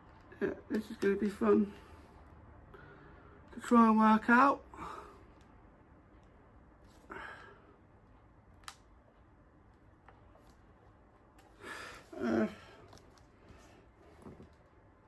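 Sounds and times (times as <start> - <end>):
person sighing and breathing: 7.0 - 7.7, 11.6 - 12.9
short grunt: 12.1 - 12.8.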